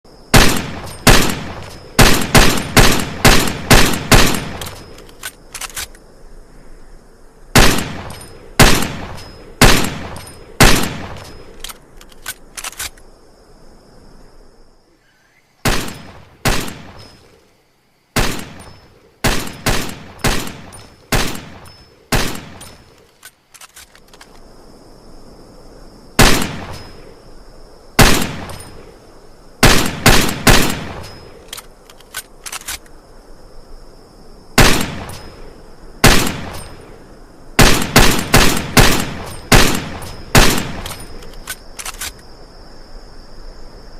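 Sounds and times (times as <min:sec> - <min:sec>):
pistol shots with echo: 0:00.3 - 0:04.7, 0:07.6 - 0:11.2, 0:15.7 - 0:17.1, 0:18.2 - 0:22.8, 0:26.2 - 0:26.9, 0:28.0 - 0:28.8, 0:29.6 - 0:31.2, 0:34.6 - 0:35.4, 0:36.0 - 0:36.8, 0:37.6 - 0:41.0
light gun clicks: 0:01.6 - 0:06.0, 0:07.7 - 0:13.1, 0:22.3 - 0:24.4, 0:29.7 - 0:33.0, 0:37.7 - 0:42.2.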